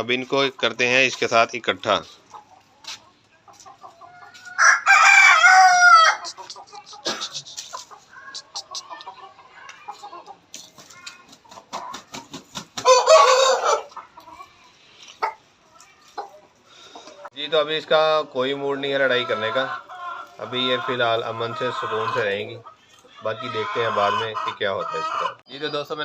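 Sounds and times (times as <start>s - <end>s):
chickens clucking: 0.0s - 26.0s
chickens scratching: 0.1s - 16.6s
rooster crowing: 4.3s - 6.2s, 12.8s - 13.9s.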